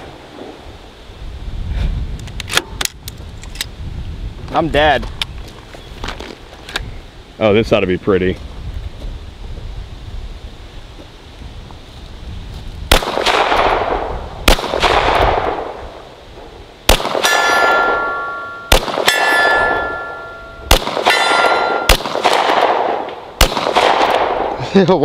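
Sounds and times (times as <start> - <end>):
rifle shots with echo: 12.9 - 15.9, 16.9 - 24.6
steel target ringing: 17.2 - 22.2.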